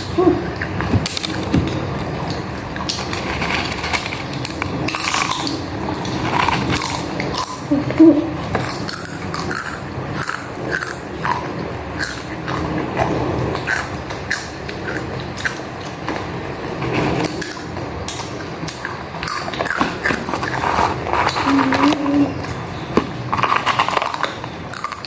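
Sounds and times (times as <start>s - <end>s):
biting and chewing food: 0.0s - 25.0s.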